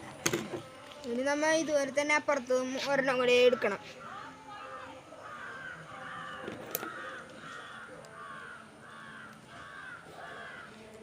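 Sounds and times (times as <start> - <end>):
crow cawing: 3.3 - 10.8.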